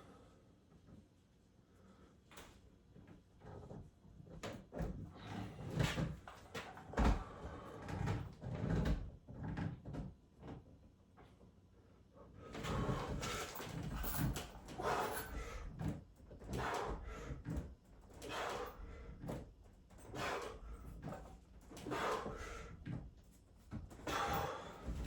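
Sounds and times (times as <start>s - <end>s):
heavy breathing: 12.2s - 15.8s, 16.5s - 17.6s, 18.2s - 19.3s, 20.0s - 21.1s, 21.7s - 23.0s, 24.0s - 25.0s.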